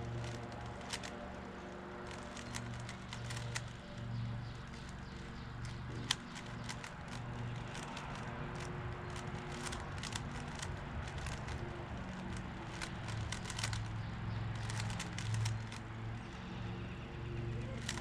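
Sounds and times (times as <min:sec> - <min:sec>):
plastic cube clicking: 0:00.1 - 0:01.2, 0:02.0 - 0:03.8, 0:05.6 - 0:14.0, 0:14.6 - 0:15.8, 0:17.8 - 0:18.0.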